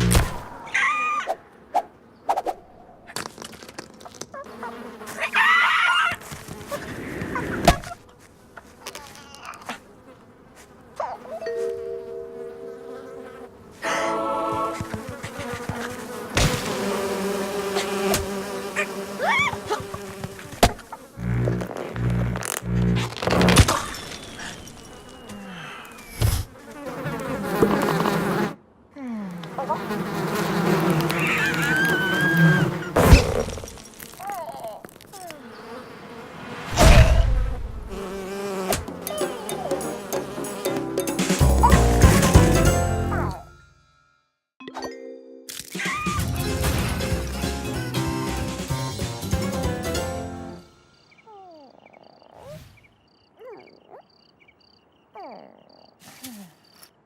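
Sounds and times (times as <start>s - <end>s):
chirpy squawking cartoon voice: 0.7s - 1.4s, 5.2s - 6.2s, 51.1s - 52.6s, 53.3s - 54.2s, 55.0s - 55.8s
insect-like buzzing tones: 12.4s - 28.2s, 34.9s - 42.5s
thump: 36.7s - 37.6s.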